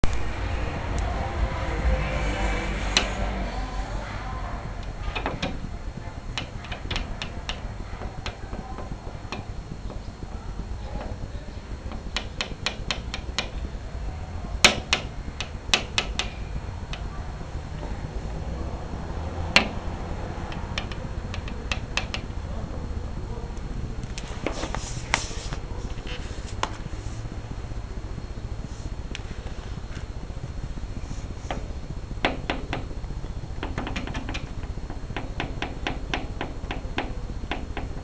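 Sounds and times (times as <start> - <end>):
low background hum: 0.0 - 38.0
cat playing clicks and taps: 4.8 - 13.8, 19.4 - 22.4, 31.0 - 38.0.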